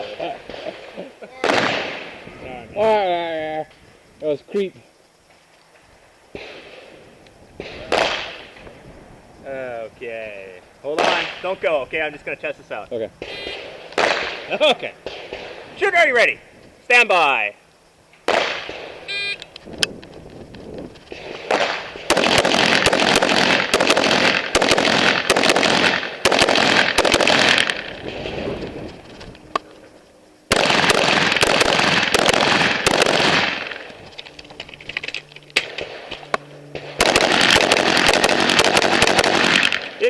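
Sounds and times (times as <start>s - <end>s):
rifle shots: 0.4s - 2.2s, 6.3s - 7.0s, 7.6s - 8.7s, 11.0s - 11.6s, 13.2s - 15.7s, 18.2s - 19.1s, 21.1s - 28.5s, 30.5s - 34.0s, 34.8s - 40.0s.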